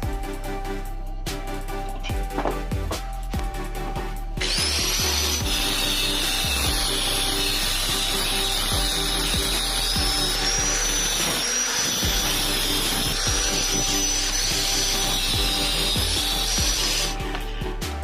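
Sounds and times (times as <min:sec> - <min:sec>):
background music with beat: 0:00.0 - 0:18.0
drill whining: 0:04.4 - 0:17.6.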